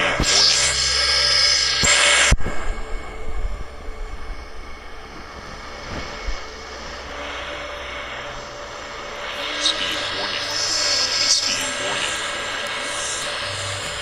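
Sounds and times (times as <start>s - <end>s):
airplane engine drone: 0.0s - 14.0s.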